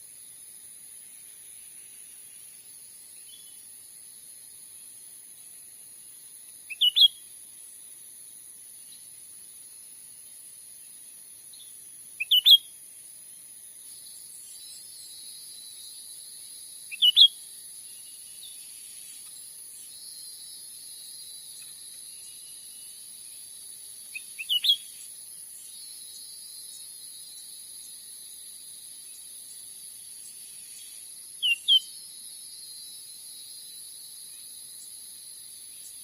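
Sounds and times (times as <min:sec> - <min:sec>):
high insect drone: 0:00.0 - 0:36.0.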